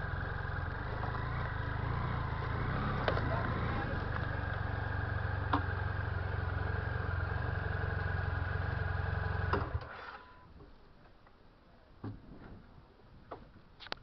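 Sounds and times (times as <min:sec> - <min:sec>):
motorcycle engine idling: 0:00.0 - 0:09.8.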